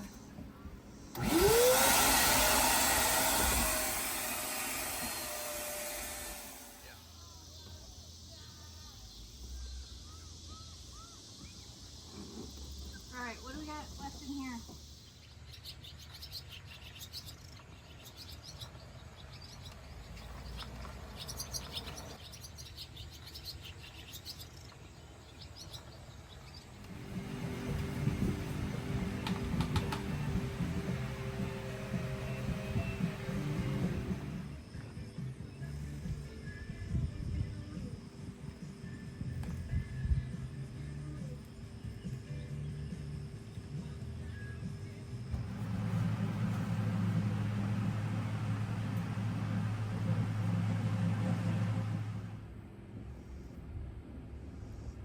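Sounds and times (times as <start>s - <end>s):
vacuum cleaner running: 0.0s - 7.1s, 26.8s - 34.7s, 45.3s - 52.4s
small birds chirping: 6.5s - 36.3s.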